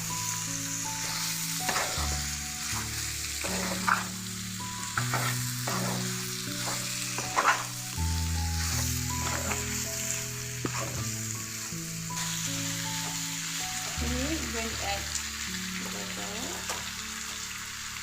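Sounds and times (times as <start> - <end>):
chicken sizzling in a pan: 0.0 - 18.0
utensil scraping pan: 1.0 - 4.2, 4.8 - 7.9, 8.6 - 9.9, 10.6 - 11.1.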